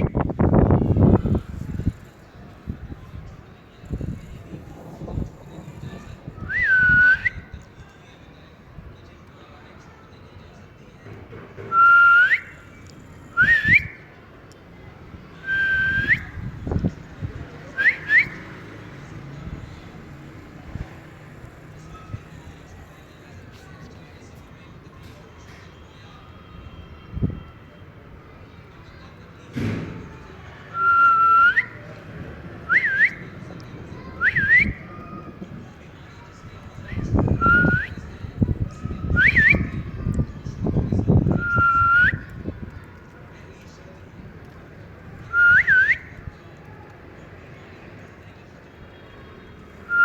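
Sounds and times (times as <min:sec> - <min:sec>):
short thump: 0:29.6 - 0:30.1.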